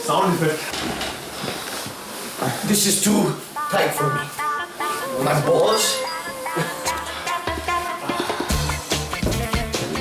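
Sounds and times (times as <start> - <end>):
upbeat music with bass and drums: 6.3 - 10.0.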